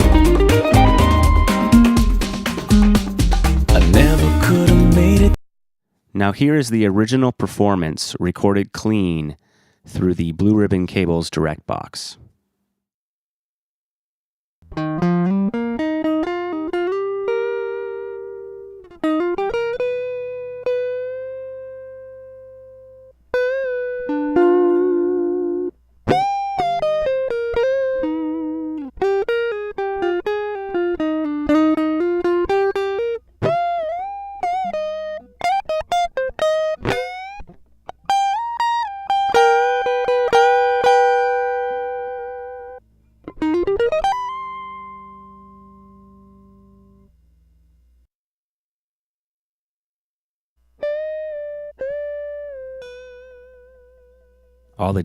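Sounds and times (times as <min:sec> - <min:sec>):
clean electric guitar solo: 0:00.0 - 0:03.2, 0:14.7 - 0:47.1, 0:50.8 - 0:54.7
finger noise on guitar strings: 0:00.0 - 0:04.0, 0:23.4 - 0:47.1.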